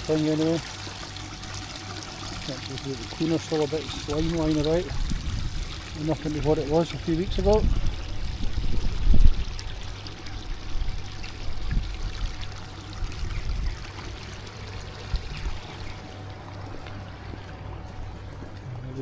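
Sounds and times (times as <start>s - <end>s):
small waterfall splashing: 0.0s - 7.7s
wind rumble on microphone: 4.0s - 13.9s, 15.0s - 15.9s.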